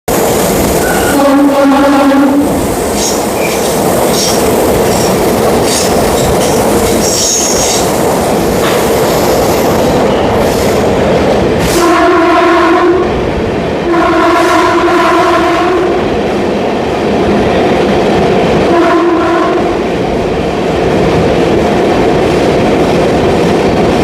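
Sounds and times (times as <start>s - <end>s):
train rushing rumble: 0.0s - 24.0s
train horn: 0.8s - 2.5s, 11.7s - 13.1s, 13.8s - 16.0s, 18.7s - 19.8s.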